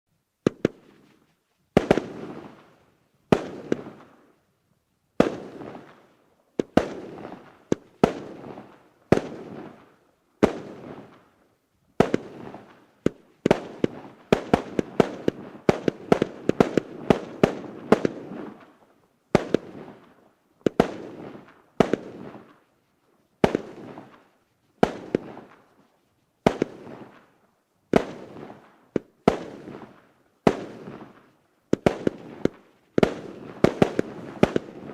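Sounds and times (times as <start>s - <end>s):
fireworks cake firing: 0.4s - 4.2s, 5.2s - 11.3s, 11.9s - 22.7s, 23.4s - 34.9s
fireworks crackle: 0.4s - 4.4s, 5.1s - 34.9s.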